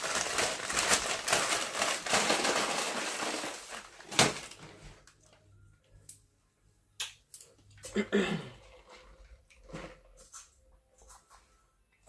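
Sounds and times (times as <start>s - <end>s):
dense crackling and crunching: 0.0s - 4.8s.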